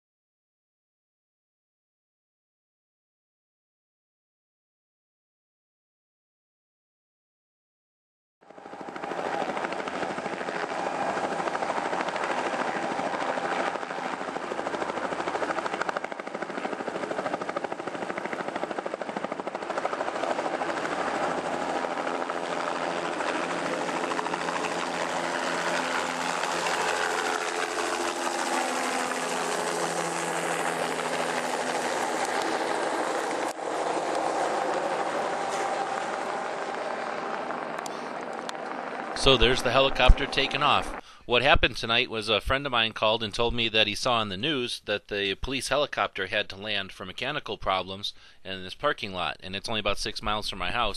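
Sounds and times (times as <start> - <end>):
helicopter rotor and turbine: 8.4 - 41.2.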